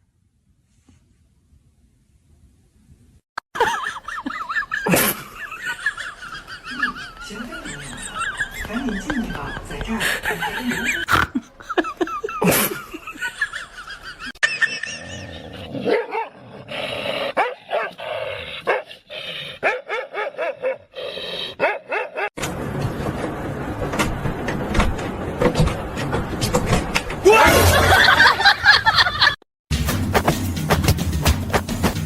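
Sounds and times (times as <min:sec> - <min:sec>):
dog barking and yipping: 0:15.8 - 0:16.4, 0:17.4 - 0:18.0, 0:19.6 - 0:20.9, 0:21.6 - 0:22.3.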